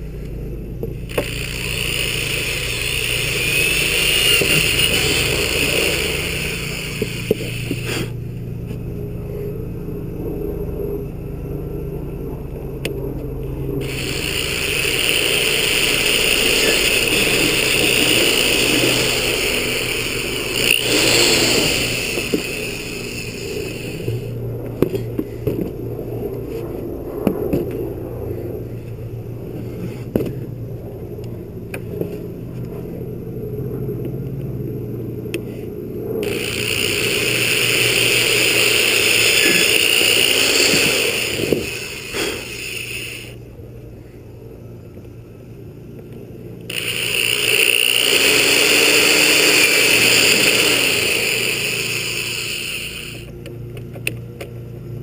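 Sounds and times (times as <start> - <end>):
steady low hum: 0.0 - 55.0
power tool grinding: 1.0 - 8.2, 13.8 - 25.1, 36.2 - 43.4, 46.7 - 53.3.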